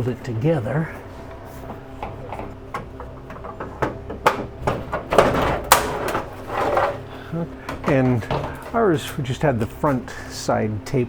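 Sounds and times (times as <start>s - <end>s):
plastic cover knocking and clattering: 1.7s - 7.1s, 7.7s - 8.8s.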